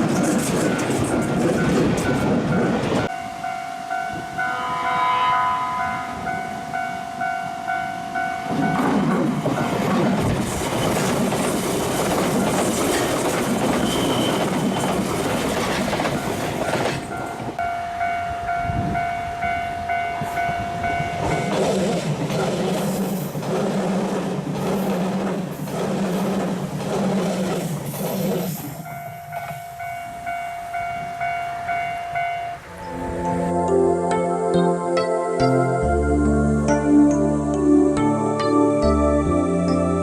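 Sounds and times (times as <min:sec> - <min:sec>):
wheels clattering over rail joints: 0:00.0 - 0:03.1, 0:08.5 - 0:17.6
electric train passing: 0:00.0 - 0:40.0.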